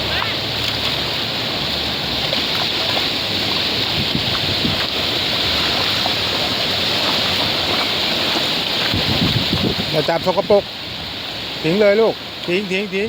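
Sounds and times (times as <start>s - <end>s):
surf washing onto beach: 0.0s - 13.0s
wind on microphone: 1.9s - 11.5s.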